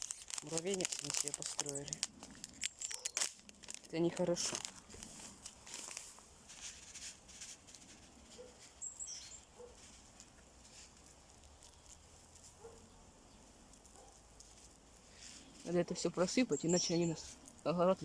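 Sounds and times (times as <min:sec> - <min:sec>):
faint rustling: 0:00.0 - 0:17.7
high falling bird chirp: 0:02.6 - 0:03.3, 0:08.4 - 0:09.7, 0:15.1 - 0:17.4.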